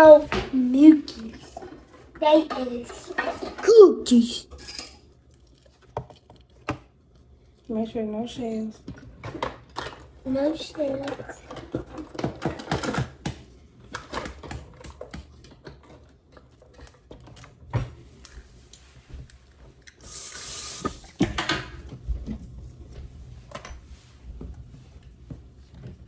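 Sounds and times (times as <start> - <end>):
utensils and bowls clattering: 0.0 - 5.2, 9.1 - 17.5, 20.0 - 22.0.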